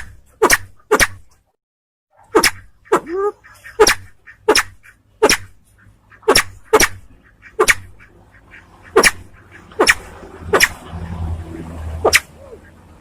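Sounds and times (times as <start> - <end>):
sharp clipped bird notes: 2.2 - 8.1, 8.8 - 10.8.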